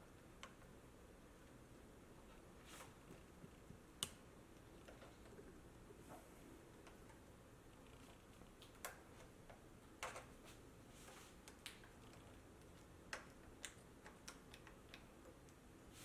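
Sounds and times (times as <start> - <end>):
faint small clicks and taps: 0.4 - 0.7, 3.1 - 4.2, 11.1 - 15.6.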